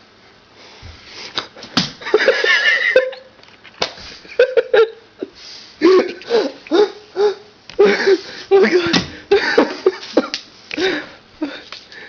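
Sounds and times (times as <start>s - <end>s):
person laughing: 2.0s - 3.3s, 4.2s - 11.7s
person talking: 7.8s - 9.1s.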